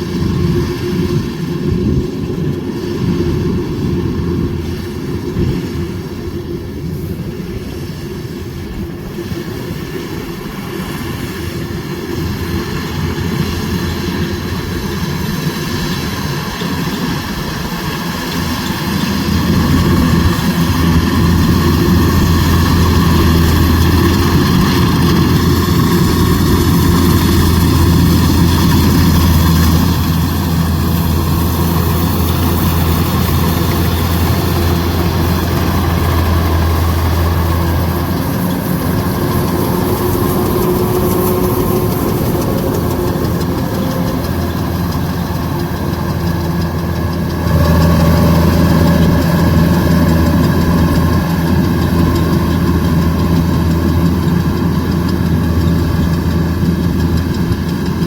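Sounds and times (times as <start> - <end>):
diesel engine running: 0.0 - 58.0.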